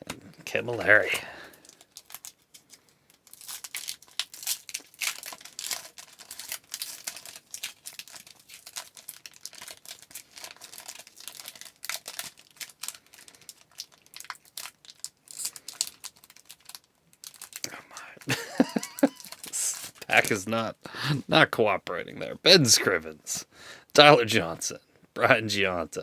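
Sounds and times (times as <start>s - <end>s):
card pack wrapper crinkling and tearing: 0.8s - 20.6s.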